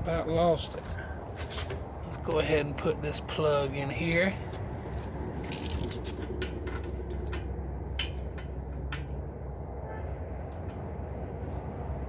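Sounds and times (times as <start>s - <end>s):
steady low rumble: 0.0s - 12.0s
small metallic clicks and taps: 5.4s - 9.2s.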